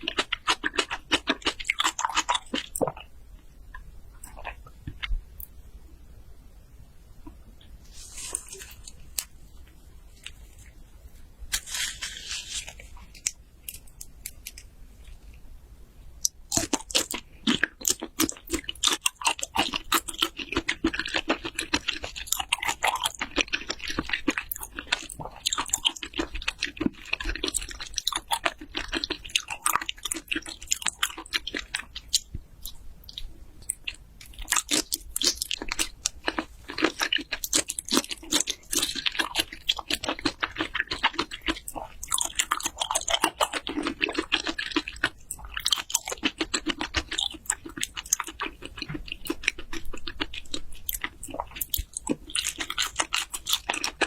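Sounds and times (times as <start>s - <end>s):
chewing raw seafood: 0.0s - 3.1s, 16.2s - 54.0s.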